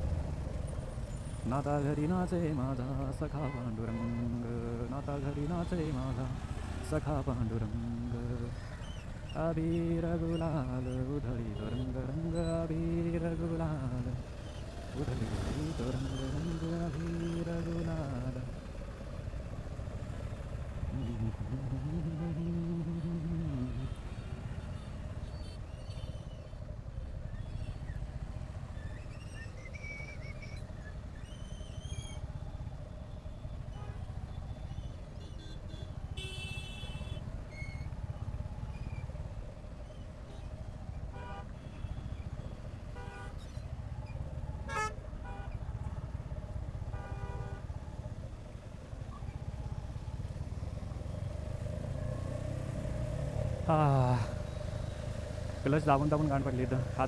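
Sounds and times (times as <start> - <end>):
road and wind noise: 0.0 - 57.0
car horns tooting: 3.4 - 4.5, 35.2 - 37.2, 41.1 - 43.6, 44.6 - 46.1, 46.8 - 48.5
motorcycle engine running: 43.7 - 57.0.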